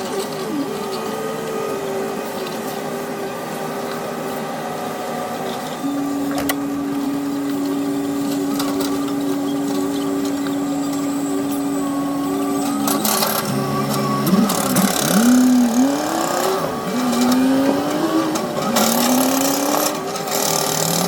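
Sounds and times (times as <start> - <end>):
strong steady whine: 0.0 - 20.2
excavator running: 0.0 - 21.0
low stepped tones: 5.8 - 19.1.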